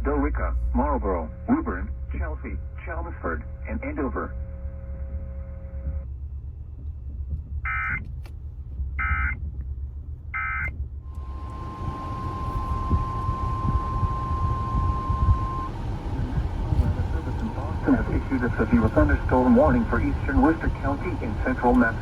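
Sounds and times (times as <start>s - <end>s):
steady single-pitch alert tone: 10.4s - 16.6s.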